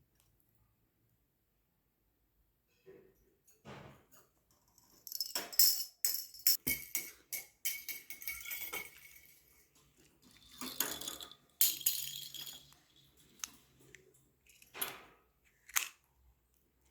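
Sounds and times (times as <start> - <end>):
metallic jingling and rattling: 10.3 - 14.7.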